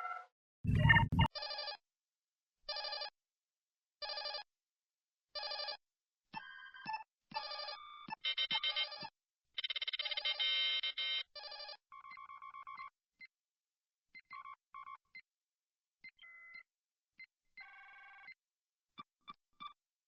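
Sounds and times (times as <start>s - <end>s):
brief steady electronic tone: 0.7s - 1.3s
computer console beeps: 0.7s - 1.3s
warbling electronic trill: 0.7s - 1.3s.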